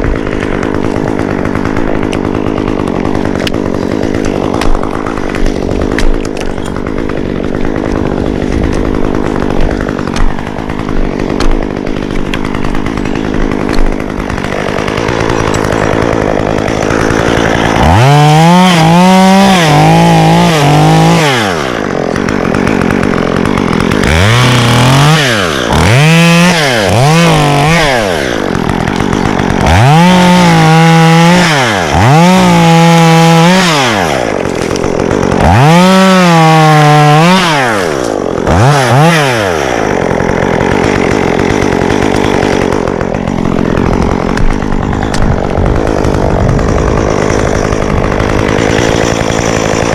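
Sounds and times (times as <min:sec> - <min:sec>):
chainsaw idling: 0:00.0 - 0:49.9
chainsaw revving in a cut: 0:00.0 - 0:49.9.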